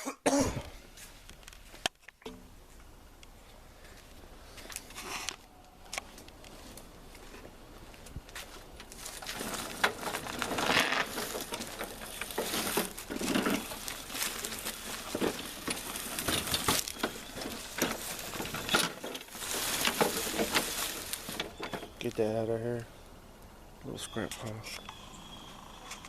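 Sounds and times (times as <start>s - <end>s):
scrap items knocking and rattling: 9.2s - 22.0s.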